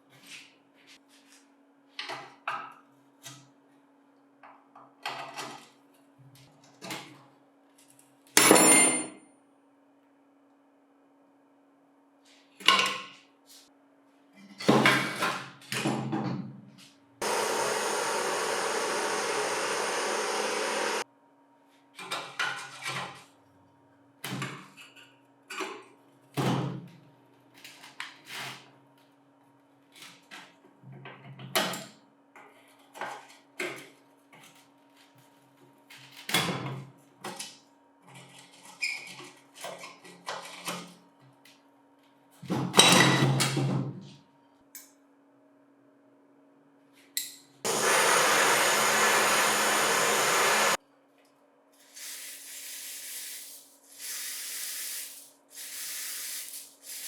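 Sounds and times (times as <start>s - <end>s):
tools and metal parts clattering: 8.4s - 9.2s.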